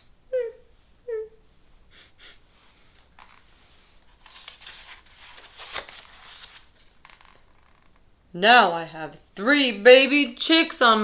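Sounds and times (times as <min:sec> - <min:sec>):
book pages rustling: 0:03.1 - 0:08.0.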